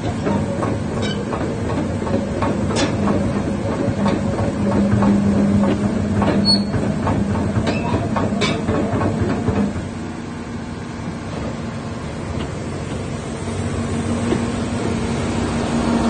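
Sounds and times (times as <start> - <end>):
metallic clanks and knocks: 0.2 - 9.8
excavator diesel engine drone: 8.2 - 16.0.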